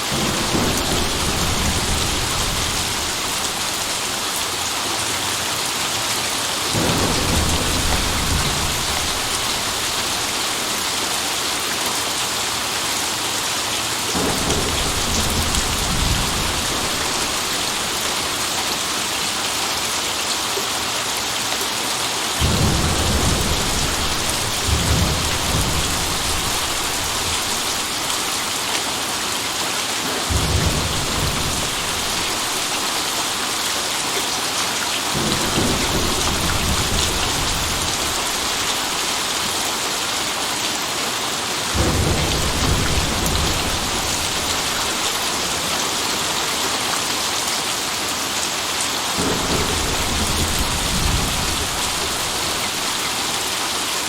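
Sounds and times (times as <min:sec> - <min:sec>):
steady rain hissing: 0:00.0 - 0:54.0
low thunder rumbling: 0:00.1 - 0:04.3, 0:06.8 - 0:11.0, 0:14.1 - 0:18.4, 0:22.4 - 0:28.5, 0:30.3 - 0:33.5, 0:35.2 - 0:39.1, 0:41.8 - 0:46.3, 0:49.2 - 0:53.6.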